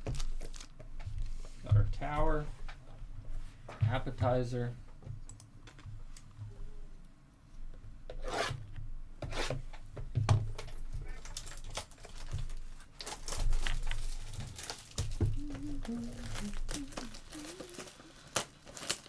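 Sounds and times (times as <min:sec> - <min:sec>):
card packs torn open: 0:00.0 - 0:00.7, 0:11.1 - 0:19.0
foil wrappers rustling: 0:00.0 - 0:01.5, 0:10.6 - 0:19.0.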